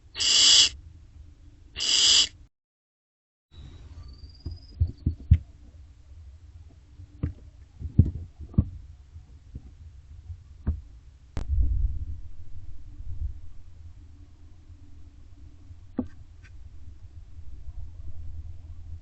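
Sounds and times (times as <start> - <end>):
steady low hum: 0.0 - 2.5, 3.6 - 19.0
rumble of scuffling: 4.4 - 13.9.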